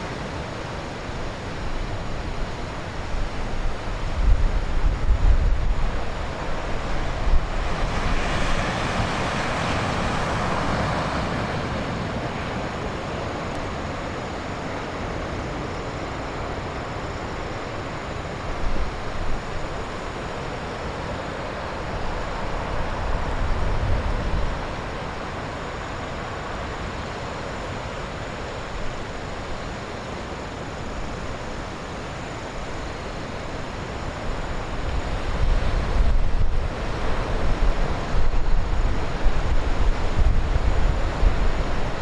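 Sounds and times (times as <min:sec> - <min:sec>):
surf breaking on shore: 0:00.0 - 0:29.2
wind buffeting microphone: 0:01.7 - 0:15.3, 0:21.5 - 0:25.8, 0:34.1 - 0:42.0.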